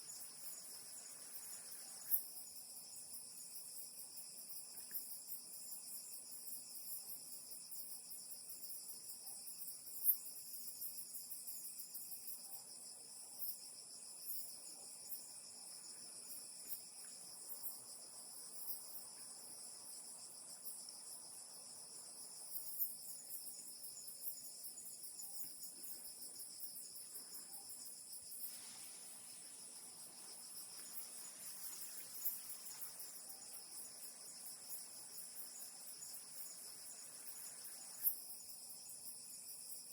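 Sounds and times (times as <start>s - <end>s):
night insects trilling: 0.0s - 39.9s
faint ticks: 4.6s - 5.4s.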